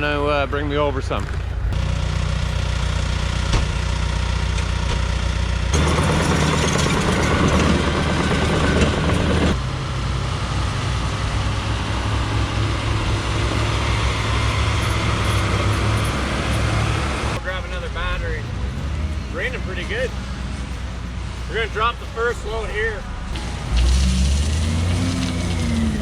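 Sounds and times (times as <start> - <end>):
diesel engine idling: 0.0 - 26.0
loud rushing noise: 5.7 - 17.4, 18.2 - 26.0.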